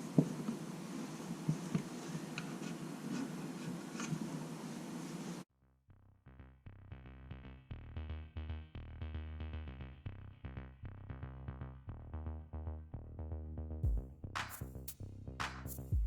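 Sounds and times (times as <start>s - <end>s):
electronic music with bass: 6.2s - 16.0s.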